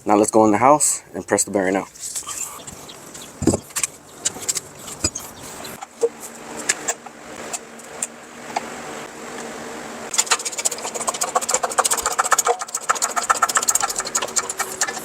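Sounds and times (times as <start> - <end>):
low hum: 2.1 - 15.0
rapid mechanical clicking and rattling: 10.1 - 15.0.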